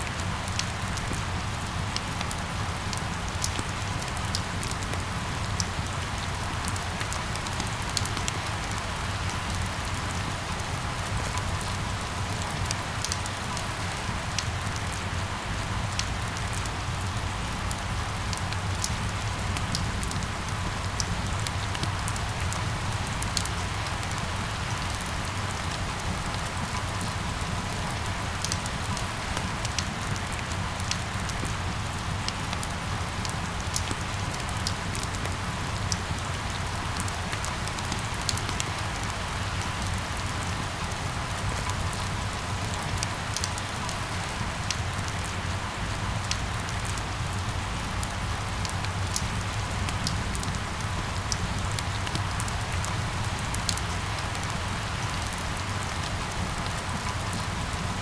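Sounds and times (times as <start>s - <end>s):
steady rain falling: 0.0s - 58.0s
raindrops ticking: 15.9s - 45.5s.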